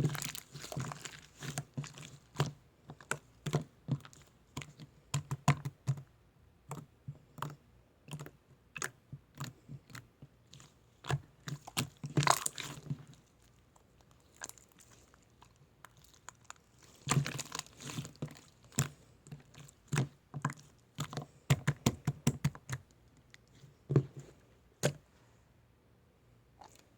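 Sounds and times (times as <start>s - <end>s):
close-up clicks and crunches: 0.0s - 4.9s.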